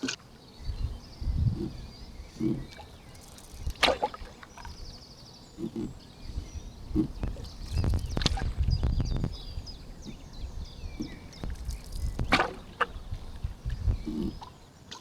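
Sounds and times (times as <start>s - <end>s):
small birds chirping: 0.2s - 15.0s
low rumble: 0.6s - 14.5s
paddle splashing in water: 0.8s - 15.0s.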